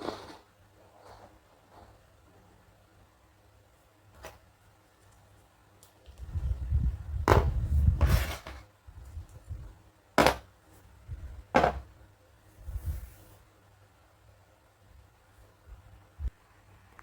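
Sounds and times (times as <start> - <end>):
handling and rubbing noise: 0.0 - 2.5, 7.2 - 12.0.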